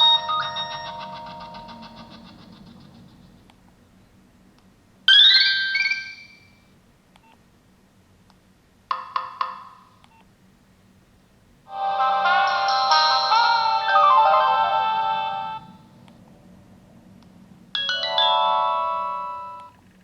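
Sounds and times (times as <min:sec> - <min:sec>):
mobile phone ringtones: 0:00.0 - 0:02.4, 0:11.7 - 0:15.8, 0:17.8 - 0:19.7.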